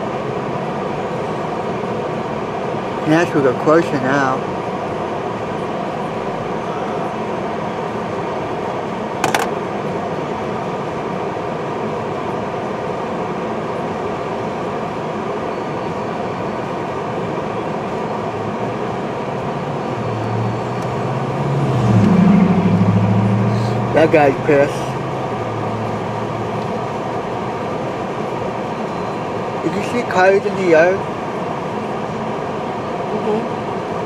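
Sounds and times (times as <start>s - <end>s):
sharp click: 9.2s - 9.5s
low hum rising in pitch: 19.6s - 27.1s.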